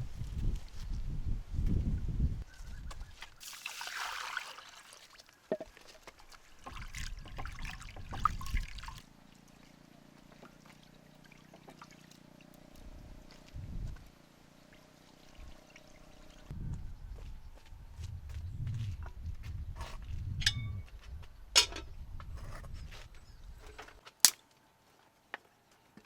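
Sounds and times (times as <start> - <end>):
water trickling and splashing: 3.4 - 12.6.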